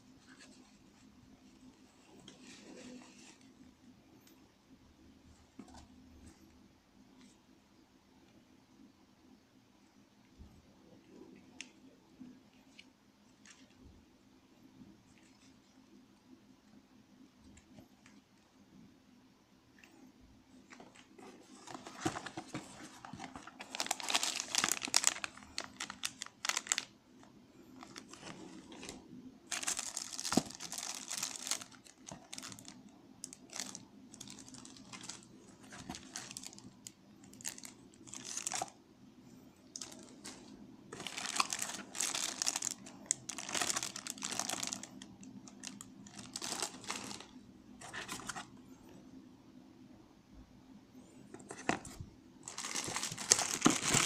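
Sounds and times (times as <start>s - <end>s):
packaging crinkling and rustling: 20.6s - 38.8s, 39.6s - 48.5s, 51.3s - 54.0s.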